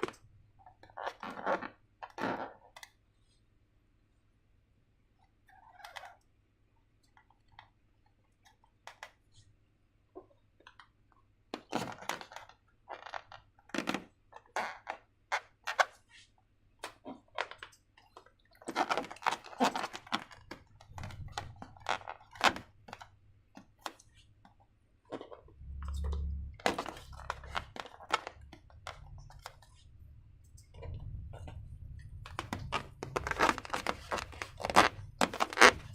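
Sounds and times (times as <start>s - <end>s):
clicks taps and crackly rustles: 16.8s - 35.9s
low thumps: 25.5s - 35.9s.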